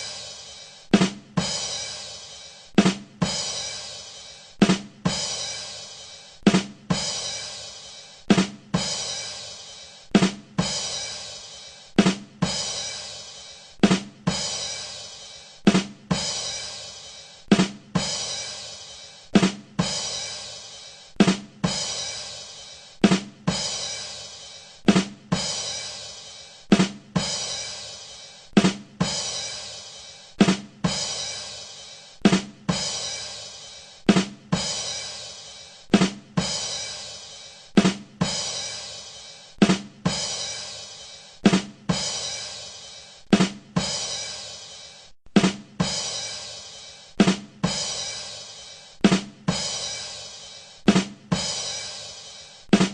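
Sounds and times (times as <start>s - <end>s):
drum hits: 37.7s - 38.5s, 39.6s - 40.4s, 43.3s - 44.2s, 45.3s - 46.2s, 47.2s - 48.0s, 49.0s - 50.0s, 50.8s - 51.7s.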